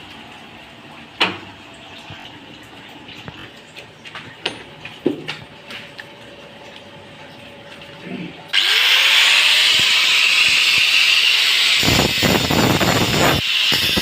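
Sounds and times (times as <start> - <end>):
power tool spinning up: 8.5 - 14.0.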